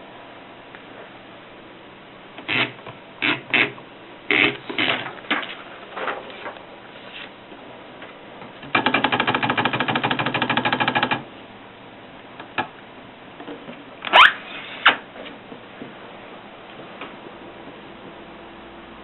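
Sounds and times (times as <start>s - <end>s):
typewriter carriage sliding: 4.4s - 6.6s.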